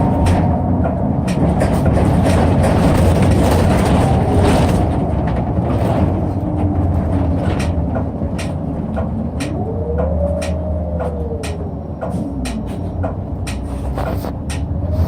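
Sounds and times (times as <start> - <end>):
bus engine and road rumble: 0.0 - 15.0
drivetrain whine: 0.0 - 15.0
sharp clicks or rattles: 7.4 - 15.0.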